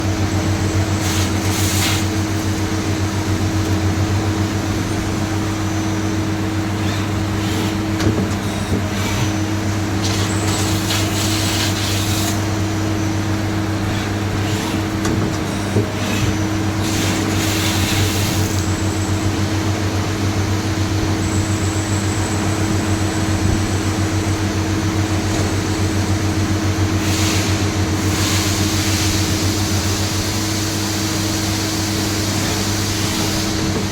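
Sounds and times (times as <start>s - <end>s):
machine hum with tones: 0.0s - 33.9s
hissing bursts: 8.8s - 18.6s.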